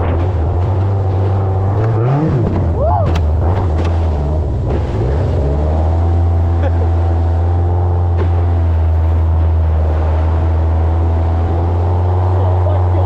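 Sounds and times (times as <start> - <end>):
engine running with low exhaust hum: 0.0 - 13.0.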